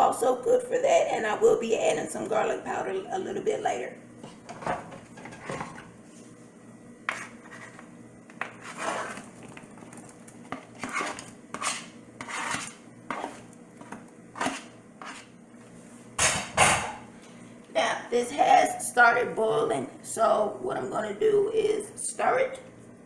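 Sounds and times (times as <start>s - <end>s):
utensil scraping cooking pot: 4.2s - 6.4s, 7.0s - 15.4s.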